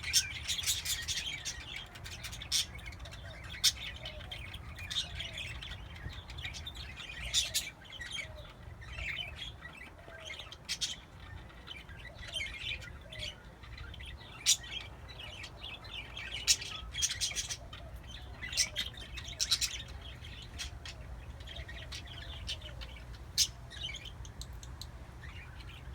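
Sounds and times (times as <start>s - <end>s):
parakeets chirping and squeaking: 0.0s - 25.9s.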